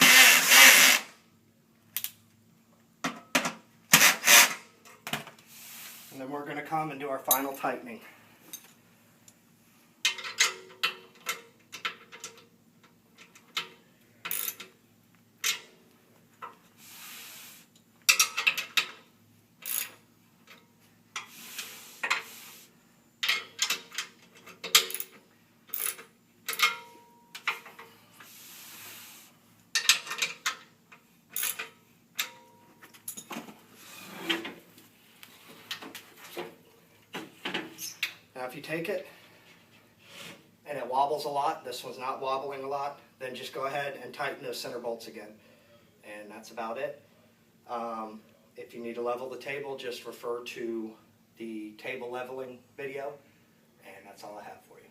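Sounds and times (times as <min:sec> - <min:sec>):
wrench clicking on metal bolts: 0:10.0 - 0:14.8, 0:18.1 - 0:19.0, 0:19.6 - 0:20.6, 0:23.2 - 0:27.7, 0:29.8 - 0:30.6, 0:31.3 - 0:32.5.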